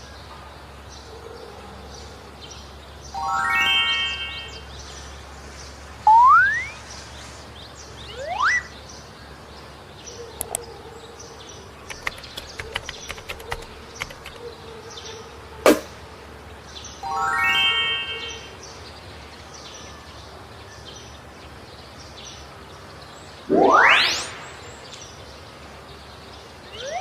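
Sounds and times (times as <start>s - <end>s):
light clicks: 11.8s - 14.4s
rising whistle-like glides: 23.5s - 25.0s.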